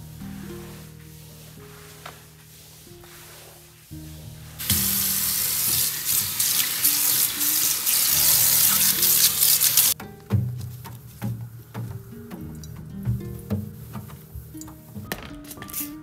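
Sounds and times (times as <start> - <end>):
soft background music: 0.0 - 16.0
tap water running into sink: 4.6 - 10.0.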